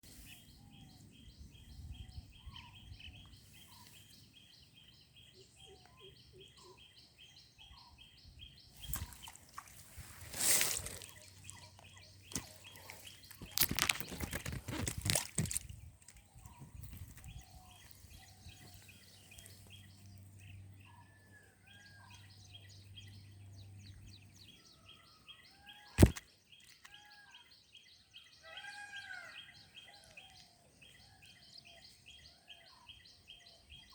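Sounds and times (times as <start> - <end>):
birds calling: 0.1 - 33.9
sharp loud click: 26.0 - 27.0.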